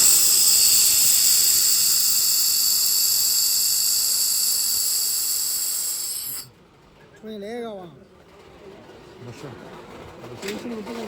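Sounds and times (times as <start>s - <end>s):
gas hissing from nozzle: 0.0s - 6.5s.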